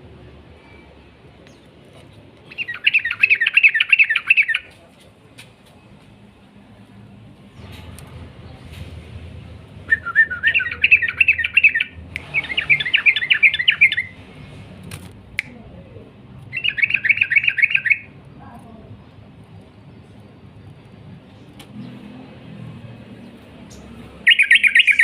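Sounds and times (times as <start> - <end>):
bulbul singing chattering phrases: 2.5 - 4.7, 10.2 - 14.2, 15.4 - 19.1, 23.7 - 25.0.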